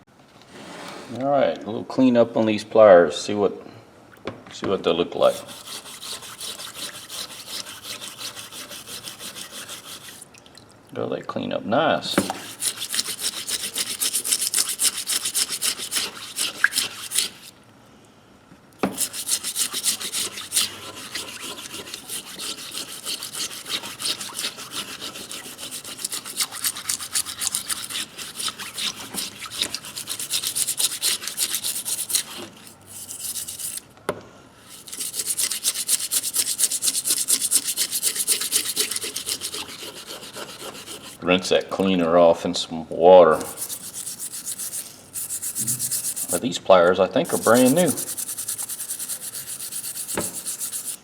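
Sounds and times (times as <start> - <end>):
hand scrubbing metal pliers: 5.2 - 10.2, 12.1 - 17.5, 18.8 - 33.8, 34.6 - 41.8, 43.3 - 46.4, 47.2 - 51.0.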